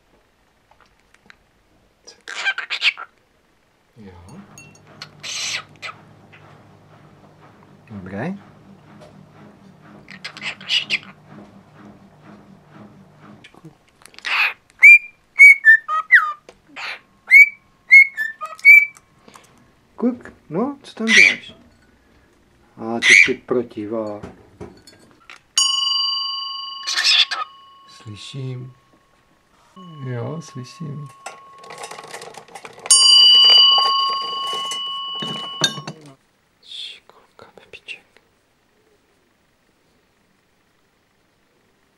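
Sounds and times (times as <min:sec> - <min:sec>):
small metal bell ringing: 0:04.3 - 0:05.0, 0:24.8 - 0:28.9, 0:29.8 - 0:36.1
raspy bird notes: 0:04.9 - 0:07.4, 0:09.2 - 0:12.8, 0:26.8 - 0:28.2
cockatiel whistling: 0:14.3 - 0:19.0
light clicking and rattling: 0:30.1 - 0:36.2.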